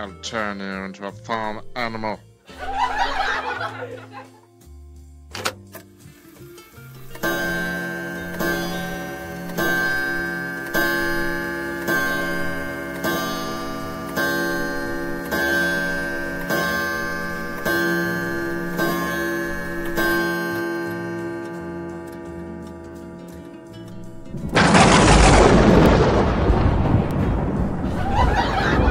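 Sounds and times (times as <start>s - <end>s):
clock chime striking: 7.0s - 25.2s.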